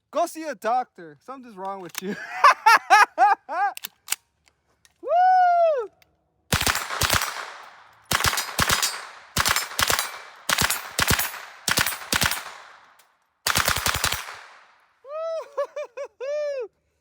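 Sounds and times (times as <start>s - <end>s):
rapid gunfire: 6.5s - 12.8s, 13.4s - 14.7s.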